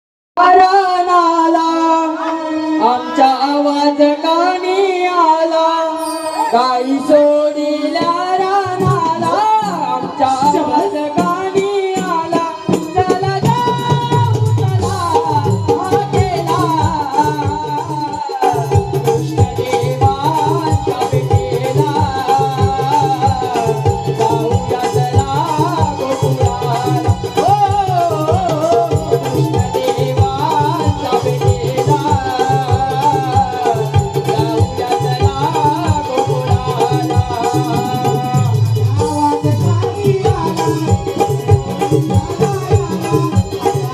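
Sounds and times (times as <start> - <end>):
person singing folk song: 0.4 - 43.9
fast hand-drum rhythm: 6.2 - 43.9.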